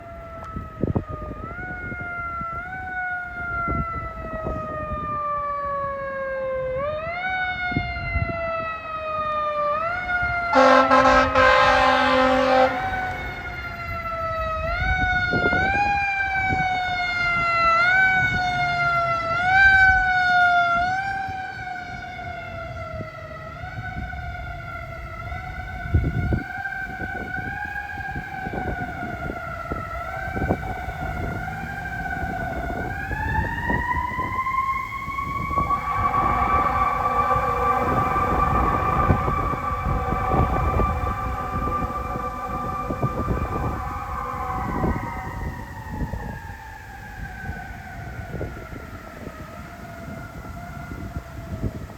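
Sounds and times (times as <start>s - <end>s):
fire truck siren wailing: 0.0s - 51.9s
loud horn blasts: 10.5s - 13.8s, 35.5s - 45.5s.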